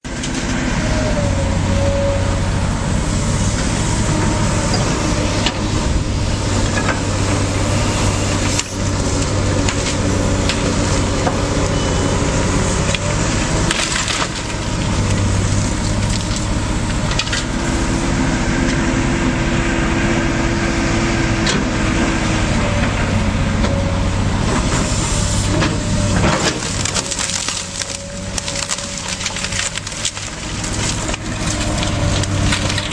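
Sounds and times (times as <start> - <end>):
heavy machine engine running: 0.0 - 32.9
wood and rubble crushing: 6.5 - 17.6, 25.5 - 32.9.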